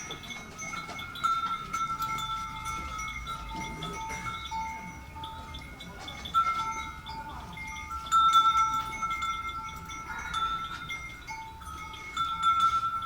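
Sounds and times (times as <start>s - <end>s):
livestock bells ringing: 0.0s - 13.0s.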